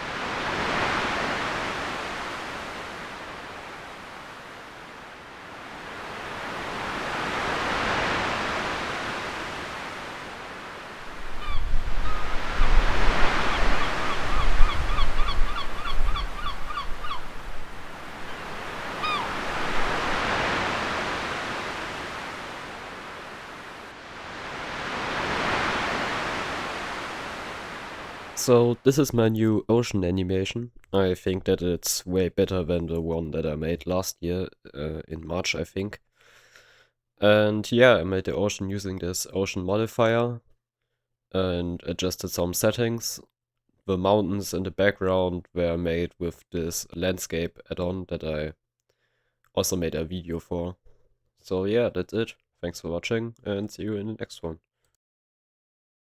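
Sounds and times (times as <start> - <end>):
ocean waves washing in: 0.0 - 28.7
bird short repeated cries: 11.3 - 12.4, 13.4 - 17.4, 19.0 - 19.4.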